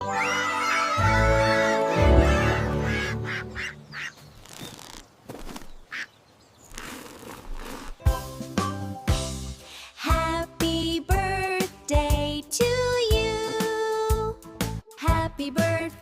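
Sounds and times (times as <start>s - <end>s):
bouncy cartoon music: 0.0s - 3.8s, 8.0s - 16.0s
duck quacks: 2.2s - 4.1s.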